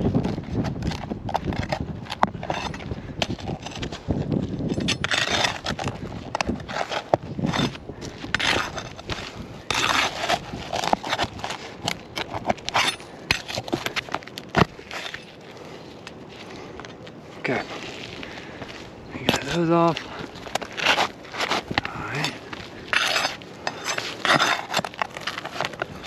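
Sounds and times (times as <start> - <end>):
shingles crackling and tearing: 0.0 - 16.2, 16.9 - 26.0
tool scraping shingles: 0.2 - 15.7, 19.2 - 26.0.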